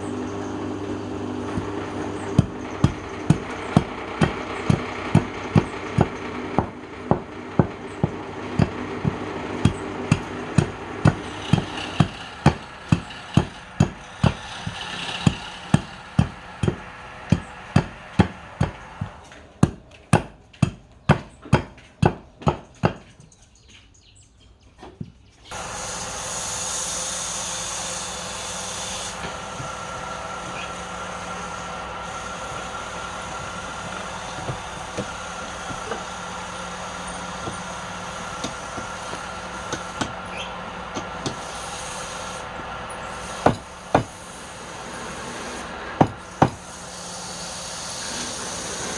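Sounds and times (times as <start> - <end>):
machine humming: 0.0 - 19.5, 25.5 - 48.9
hammer knocking: 43.4 - 44.2.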